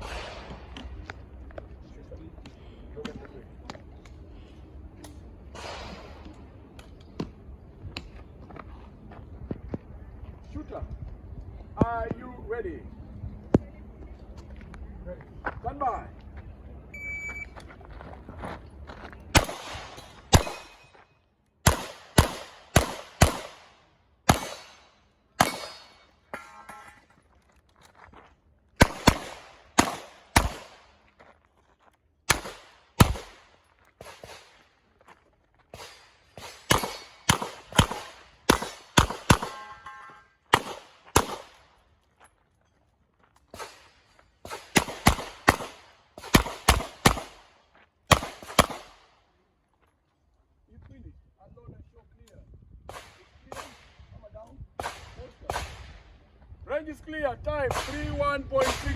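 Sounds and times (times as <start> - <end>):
revolver gunshots: 0.0 - 0.8, 19.4 - 20.8, 21.6 - 26.1, 28.8 - 30.9, 32.3 - 34.6, 35.8 - 39.8, 40.5 - 41.6, 43.6 - 47.5, 48.1 - 49.0
shot timer beep: 17.0 - 17.6.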